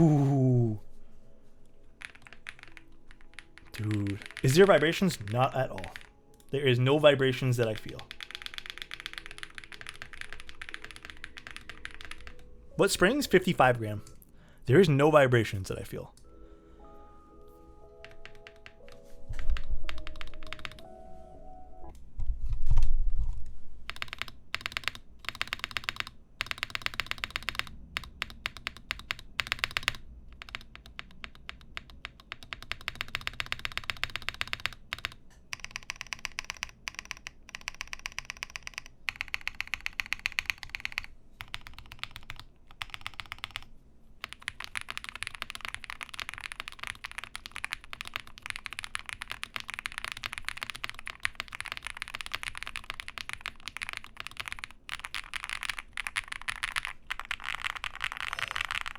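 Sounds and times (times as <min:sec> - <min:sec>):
mechanical keyboard typing: 0:02.0 - 0:13.5, 0:18.0 - 0:20.9, 0:23.9 - 0:58.9.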